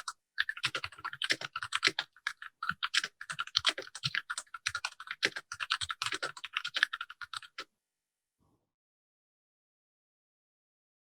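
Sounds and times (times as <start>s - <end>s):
fast typing on mechanical keyboard: 0.0s - 7.6s.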